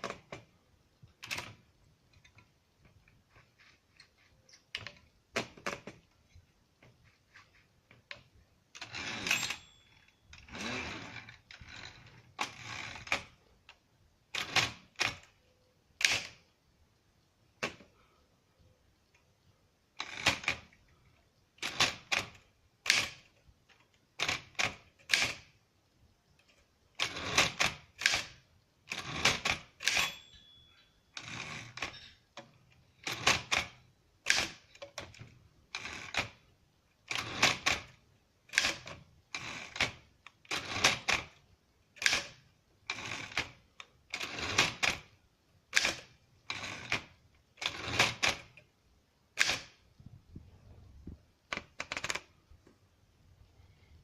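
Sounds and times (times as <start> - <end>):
thin ringing tone: 9.2 - 10.5, 29.9 - 31.2.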